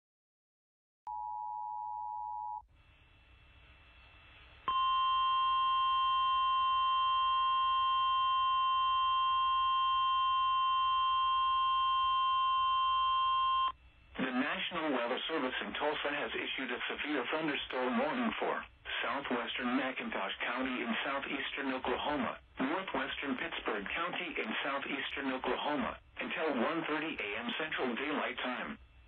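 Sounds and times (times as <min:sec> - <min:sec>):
steady alarm tone: 0:02.8 - 0:13.8
two-tone beep: 0:04.7 - 0:13.7
faint radio hiss: 0:13.9 - 0:29.0.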